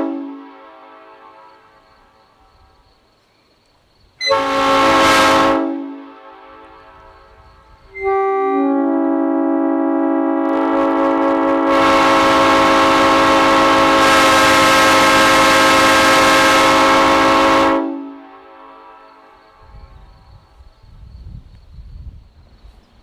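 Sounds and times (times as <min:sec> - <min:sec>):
multi-tone air horn chord: 0:00.0 - 0:01.8, 0:04.2 - 0:19.7.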